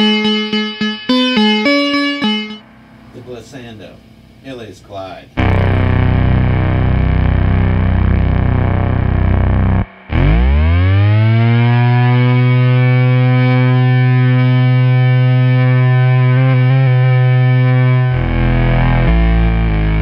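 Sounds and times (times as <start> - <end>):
synthesizer gliding buzzy tone: 5.4 - 20.0.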